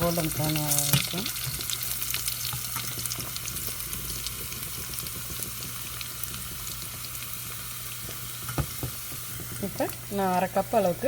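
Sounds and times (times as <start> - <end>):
garlic sizzling in hot oil: 0.0 - 11.0.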